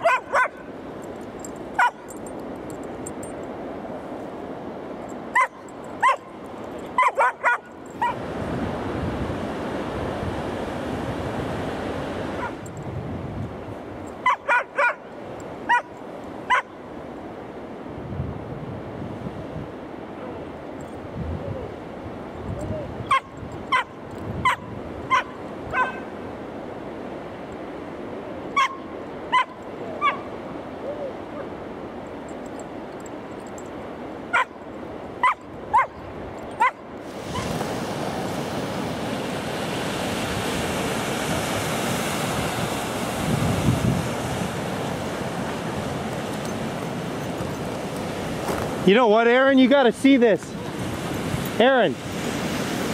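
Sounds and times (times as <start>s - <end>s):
high-pitched animal yips: 23.1s - 26.1s, 28.6s - 30.2s, 35.2s - 36.0s.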